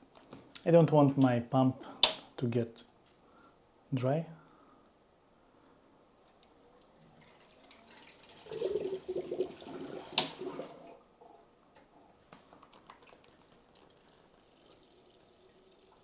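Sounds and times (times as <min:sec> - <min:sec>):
sharp click: 0:02.0 - 0:02.3
faint drips: 0:06.4 - 0:08.8, 0:12.4 - 0:16.0
liquid pouring and gurgling: 0:07.0 - 0:11.0, 0:12.7 - 0:16.0.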